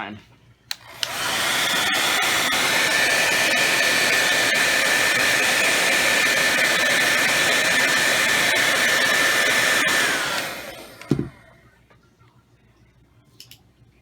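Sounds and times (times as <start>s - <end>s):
hair dryer switch click: 0.7s - 1.5s
hair dryer blowing with whine: 0.8s - 11.6s.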